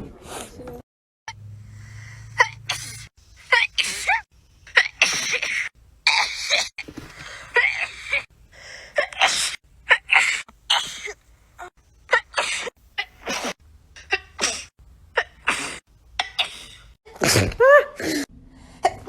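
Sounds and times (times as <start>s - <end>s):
person sneezing: 2.3s - 4.2s, 4.8s - 8.2s, 9.0s - 11.7s, 12.3s - 13.6s, 14.4s - 18.3s.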